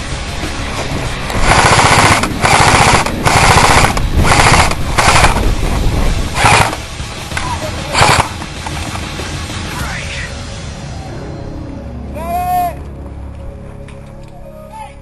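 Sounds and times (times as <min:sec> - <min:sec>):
airsoft gun firing bursts: 0:01.4 - 0:05.4, 0:06.4 - 0:06.8, 0:07.9 - 0:08.4.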